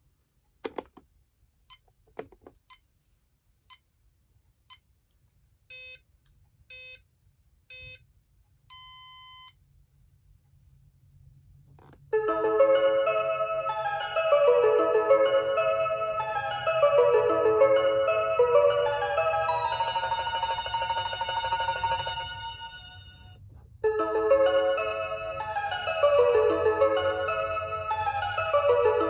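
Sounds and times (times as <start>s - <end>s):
electronic alarm beeps: 8.7s - 9.6s
chiming electronic melody: 12.2s - 29.0s.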